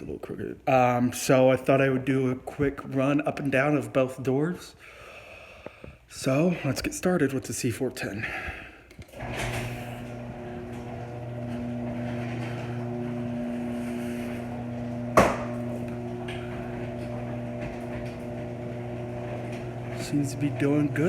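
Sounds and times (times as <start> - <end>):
garage door opener motor hum: 9.2 - 21.0
sharp clunk: 15.2 - 15.6.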